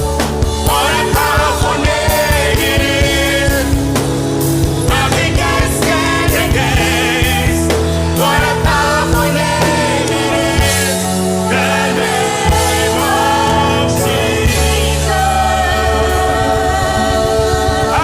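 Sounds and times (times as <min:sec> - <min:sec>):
gospel band music: 0:00.0 - 0:18.0
person singing: 0:04.9 - 0:18.0.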